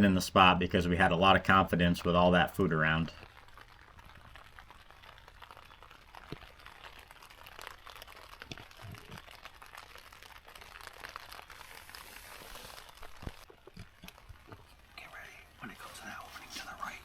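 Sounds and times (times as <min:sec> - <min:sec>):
heavy rain on fabric: 0:00.0 - 0:17.0.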